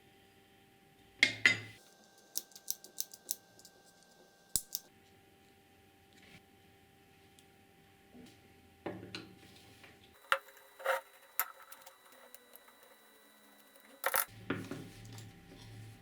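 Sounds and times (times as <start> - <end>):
small hard parts clicking and clinking: 2.2 - 4.9, 10.2 - 14.3.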